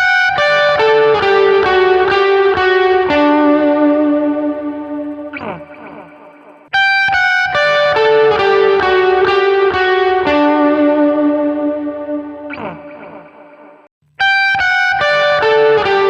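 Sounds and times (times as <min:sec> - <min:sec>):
electric guitar with light overdrive: 0:00.0 - 0:13.5, 0:14.2 - 0:16.0.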